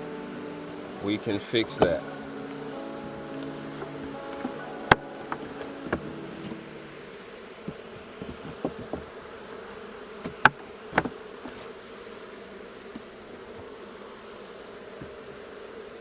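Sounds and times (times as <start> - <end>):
honeybees buzzing: 0.0 - 16.0
sharp knocks: 1.6 - 2.2, 3.0 - 7.0, 7.6 - 9.2.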